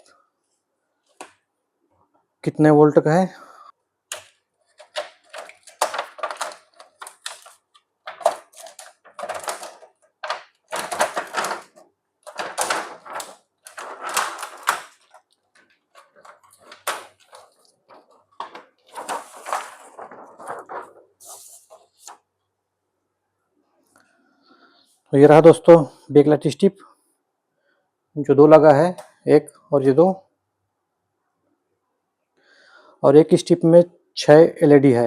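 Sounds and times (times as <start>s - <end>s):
rustling and scraping of tv parts: 4.1s - 22.2s.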